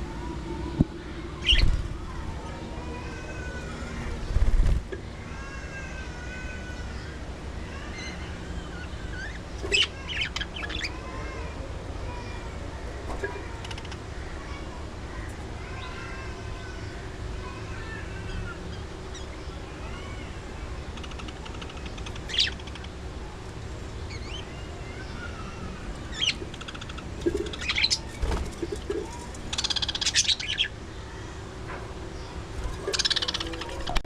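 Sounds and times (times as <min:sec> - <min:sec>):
budgerigars chattering: 0:32.8 - 0:34.0.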